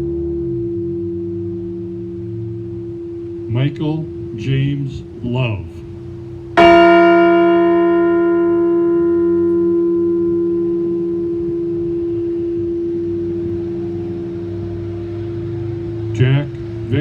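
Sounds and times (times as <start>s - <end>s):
large bell tolling: 6.6s - 17.0s.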